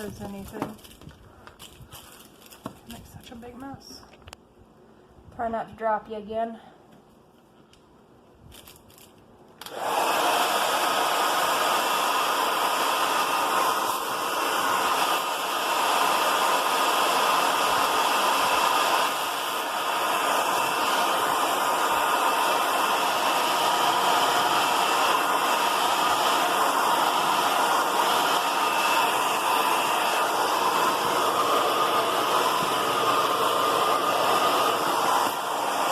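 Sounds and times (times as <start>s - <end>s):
blow dryer running: 0.0s - 2.0s, 9.6s - 35.9s.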